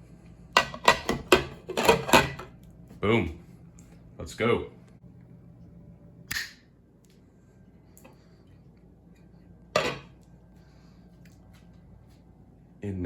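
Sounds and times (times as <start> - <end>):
kitchenware clinking: 9.8 - 10.2.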